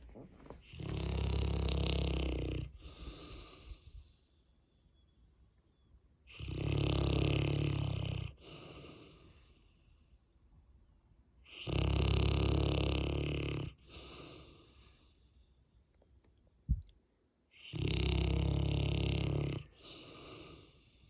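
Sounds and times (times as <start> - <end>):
dog breathing: 0.0 - 4.4, 7.6 - 10.0, 13.8 - 15.3, 19.7 - 21.0
dog snoring loudly: 0.6 - 3.8, 6.3 - 9.3, 11.5 - 14.6, 17.6 - 20.8.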